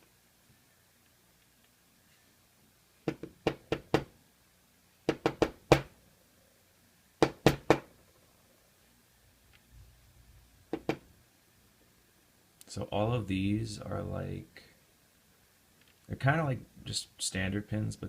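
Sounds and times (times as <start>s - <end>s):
lock knocking on hard surface: 10.7s - 11.0s.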